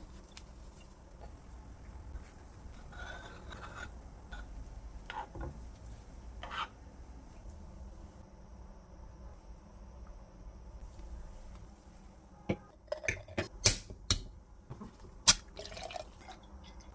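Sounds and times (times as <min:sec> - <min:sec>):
low steady hum: 0:00.0 - 0:16.9
objects rubbing and scraping: 0:02.2 - 0:05.4.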